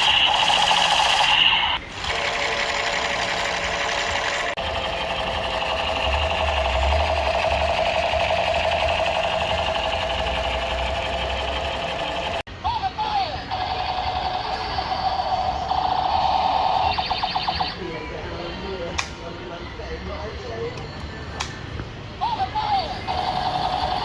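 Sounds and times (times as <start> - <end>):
toy machine gun firing: 0.0 - 12.5, 13.4 - 17.8, 22.5 - 24.0.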